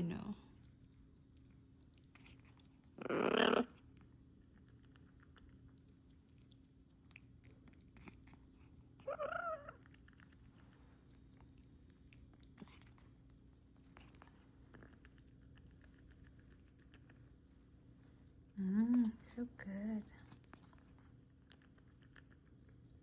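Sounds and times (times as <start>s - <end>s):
parrot warbling: 3.0s - 3.7s, 9.0s - 9.8s.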